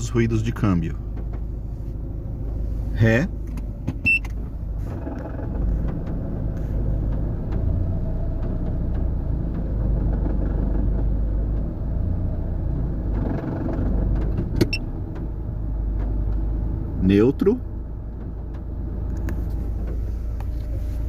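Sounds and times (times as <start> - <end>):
car gearbox low rumble: 0.0 - 21.0.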